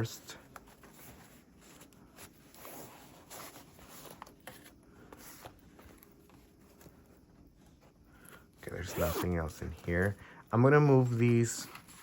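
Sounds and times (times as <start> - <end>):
packaging rustling and scraping: 0.0 - 7.2.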